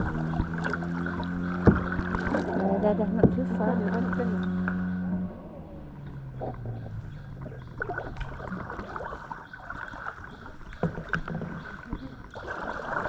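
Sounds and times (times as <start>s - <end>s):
water lapping and splashing: 0.0s - 13.0s
knocks against kayak hull: 1.6s - 2.1s.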